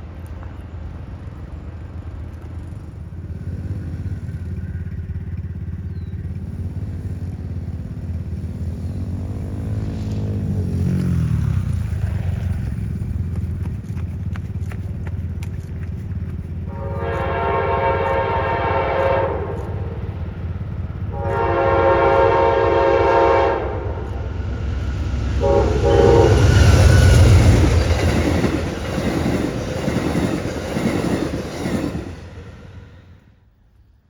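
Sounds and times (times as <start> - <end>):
train wheels rumbling on rail: 0.0 - 33.6
train horn blasts: 16.7 - 28.8.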